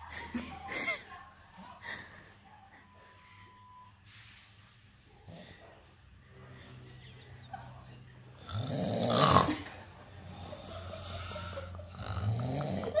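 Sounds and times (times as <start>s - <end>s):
person snoring: 8.4s - 9.6s, 10.2s - 13.0s.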